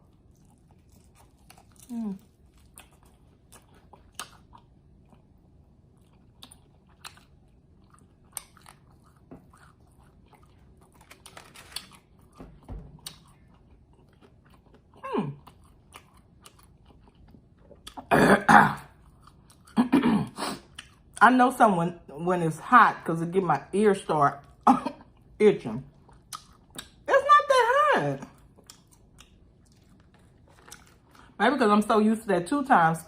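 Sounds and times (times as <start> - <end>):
chewing and crunching chicken: 0.0 - 18.1, 18.8 - 20.0, 20.6 - 21.2, 24.3 - 27.1, 27.8 - 31.4
cough-like burst: 18.1 - 18.9, 19.8 - 20.6.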